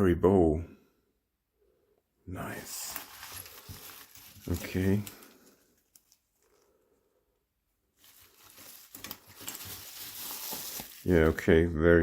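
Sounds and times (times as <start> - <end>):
packaging rustling: 2.4 - 6.7, 7.9 - 11.6.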